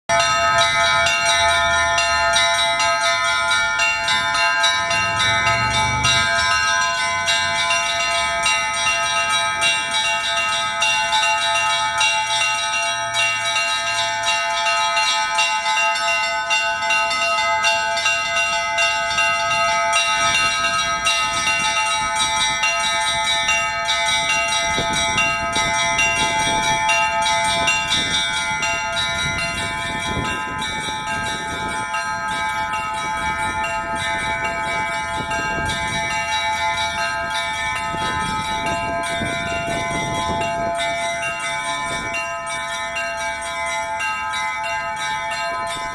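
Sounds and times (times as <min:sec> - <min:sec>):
church bells pealing: 0:00.1 - 0:45.9.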